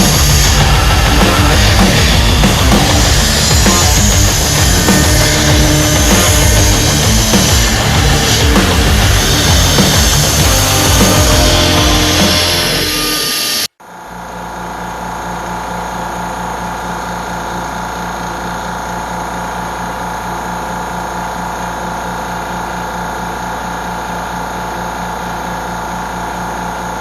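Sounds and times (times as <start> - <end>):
milling machine whining: 0.0 - 27.0.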